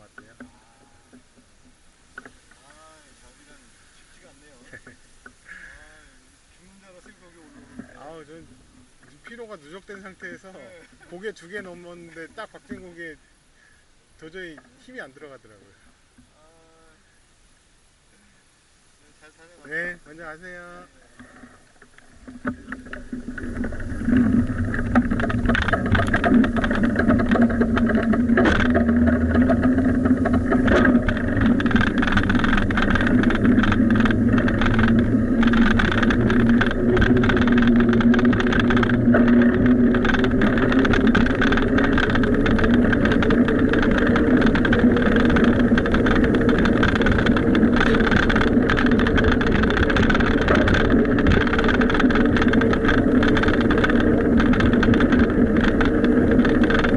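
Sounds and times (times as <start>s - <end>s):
bicycle road hum: 0.0s - 17.2s, 19.2s - 56.9s.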